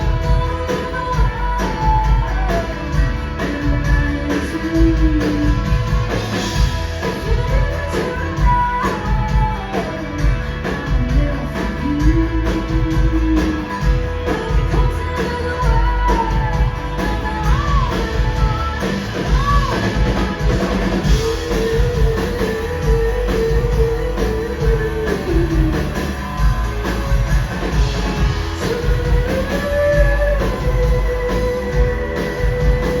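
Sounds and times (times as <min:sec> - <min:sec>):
drum kit steady beat: 0:00.0 - 0:33.0
electric guitars: 0:00.0 - 0:33.0.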